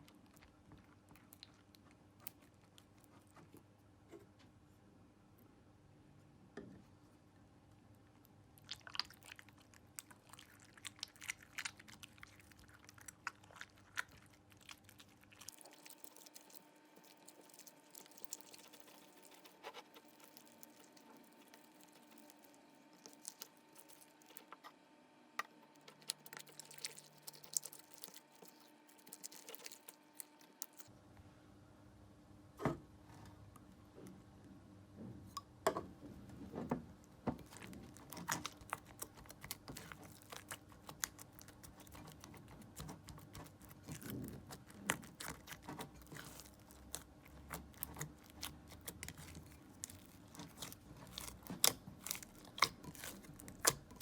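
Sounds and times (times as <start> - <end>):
sticky slime clicks and crackles: 37.4 - 54.0.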